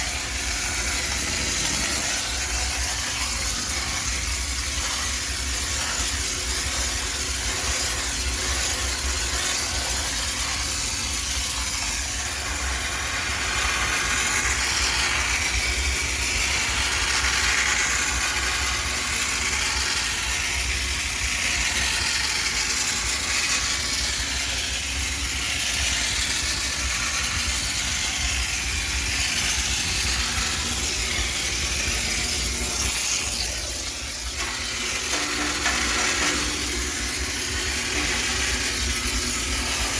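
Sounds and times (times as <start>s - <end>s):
steam hissing: 0.0s - 39.9s
low machine hum: 11.4s - 39.9s.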